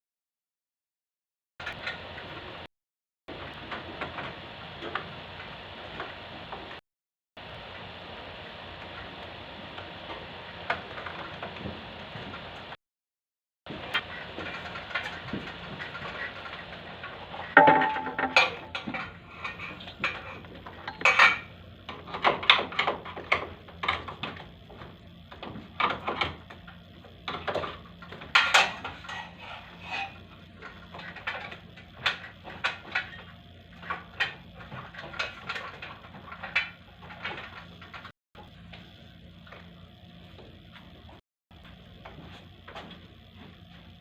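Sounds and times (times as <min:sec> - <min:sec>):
hard objects clattering: 0:17.4 - 0:21.5.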